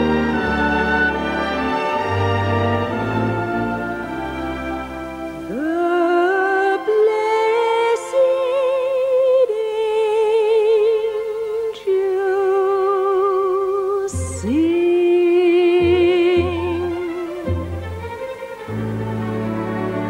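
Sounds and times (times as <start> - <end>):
christmas music accompaniment: 0.0 - 20.0
person singing with vibrato: 5.4 - 17.8.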